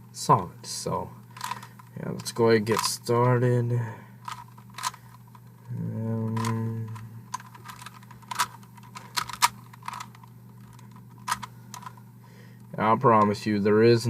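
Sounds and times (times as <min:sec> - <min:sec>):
low hum: 0:00.0 - 0:14.0
puzzle cube clicking: 0:01.4 - 0:02.9, 0:04.2 - 0:12.0.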